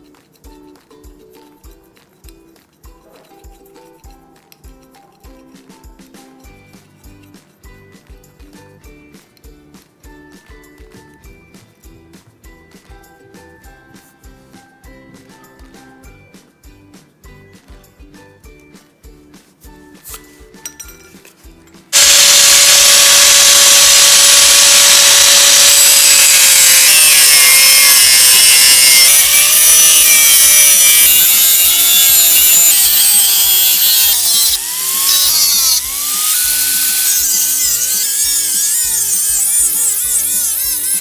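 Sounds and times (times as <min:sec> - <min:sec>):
angle grinder cutting steel pipe: 0:22.0 - 0:41.0.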